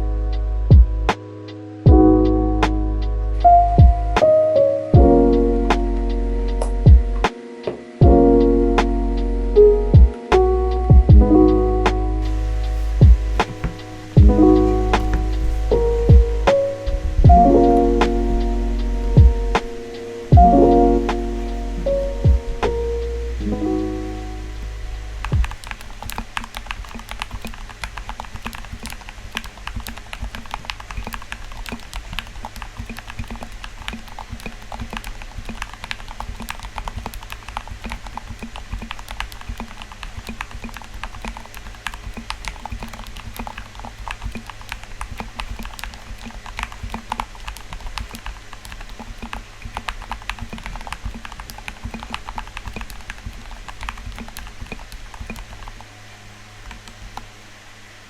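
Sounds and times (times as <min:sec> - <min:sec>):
low hum: 0:08.0 - 0:26.7
mechanical keyboard typing: 0:11.2 - 0:56.0, 0:56.6 - 0:57.4.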